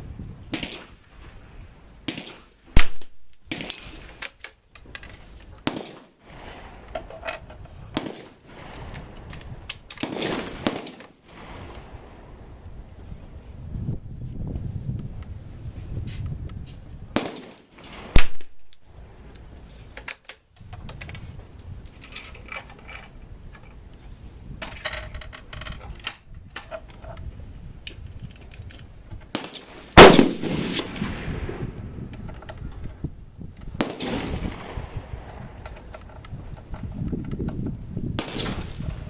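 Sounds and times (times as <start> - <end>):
rifle shots: 0.5 - 1.0, 2.1 - 4.2, 5.6 - 6.8, 7.9 - 11.7, 17.2 - 18.8, 29.3 - 31.8, 33.8 - 35.6, 38.2 - 39.0
faint clicks and handling noises: 4.0 - 5.7, 6.6 - 8.0, 19.3 - 29.4, 31.7 - 33.8, 35.2 - 37.8.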